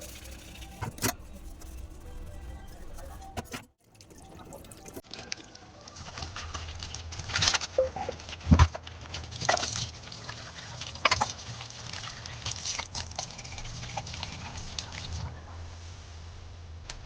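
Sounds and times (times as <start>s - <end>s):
household objects clicking and rustling: 0.0s - 5.4s.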